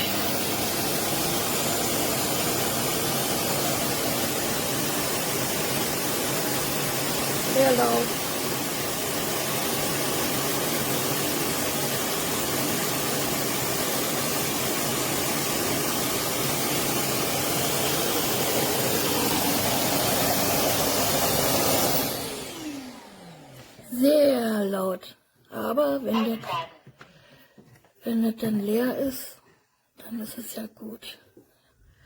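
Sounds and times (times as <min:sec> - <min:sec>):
vacuum suction motor rushing air: 0:00.0 - 0:23.9.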